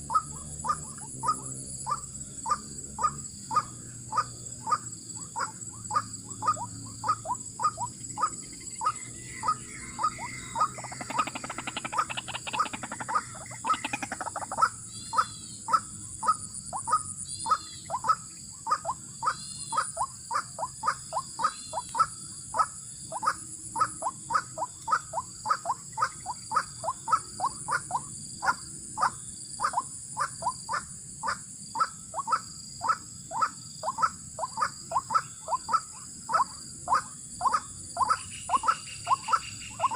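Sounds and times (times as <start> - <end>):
high insect hum: 0.0 - 39.9
waterhen calling: 5.4 - 27.9.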